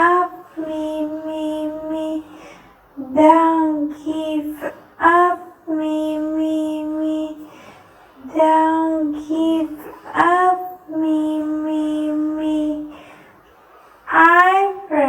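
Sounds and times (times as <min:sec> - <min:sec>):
high voice singing held notes: 0:00.0 - 0:02.4, 0:03.0 - 0:07.5, 0:08.2 - 0:12.9.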